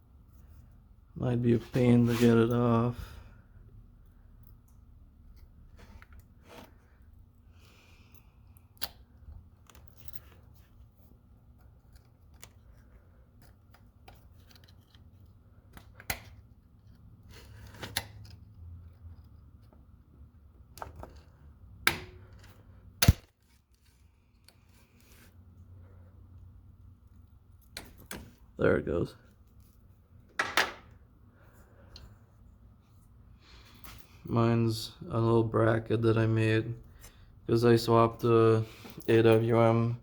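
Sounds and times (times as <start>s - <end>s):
sharp loud snap: 23.0s - 23.3s.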